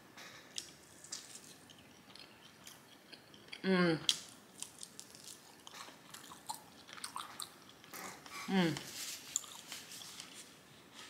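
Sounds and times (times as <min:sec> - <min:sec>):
person chewing food: 0:00.3 - 0:11.0.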